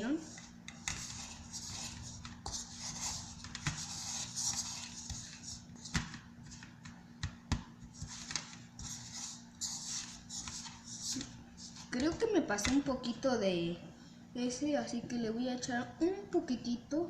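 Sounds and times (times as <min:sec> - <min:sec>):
stick scraping slime mixture: 0:00.0 - 0:07.0, 0:07.8 - 0:12.4.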